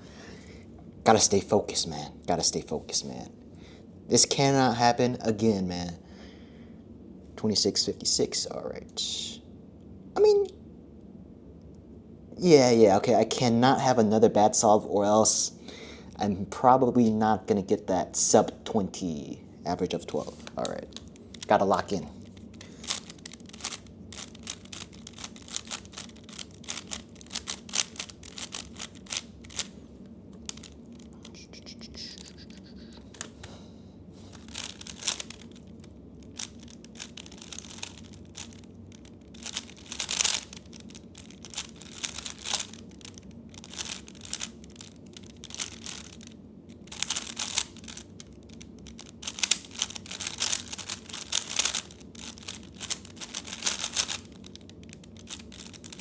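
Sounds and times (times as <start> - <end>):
puzzle cube clicking and clattering: 20.2 - 29.8, 30.4 - 33.4, 34.3 - 56.0.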